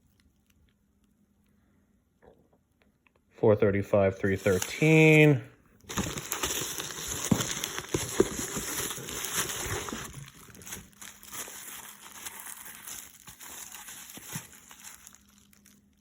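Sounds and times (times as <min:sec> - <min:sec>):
packaging crinkling and rustling: 0:04.2 - 0:16.0.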